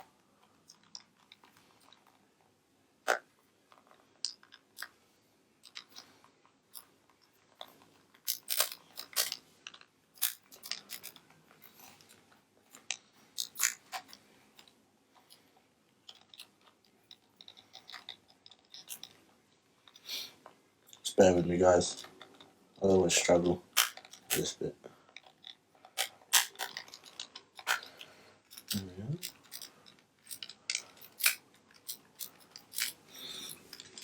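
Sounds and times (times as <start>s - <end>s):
plastic clicks creaks and crunches: 22.0s - 34.0s.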